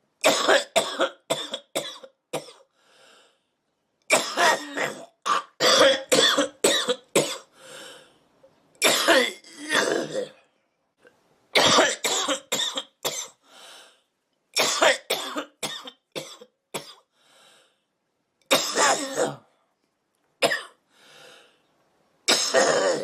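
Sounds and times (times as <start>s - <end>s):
woman coughing: 0.3s - 2.6s, 4.1s - 7.5s, 8.8s - 10.3s, 11.6s - 13.4s, 14.6s - 17.0s, 18.5s - 19.5s, 20.4s - 20.8s, 22.3s - 23.0s.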